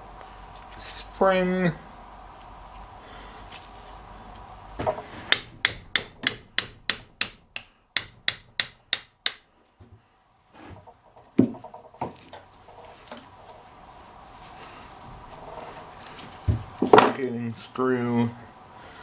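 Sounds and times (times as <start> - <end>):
hammer striking metal: 5.3 - 9.5.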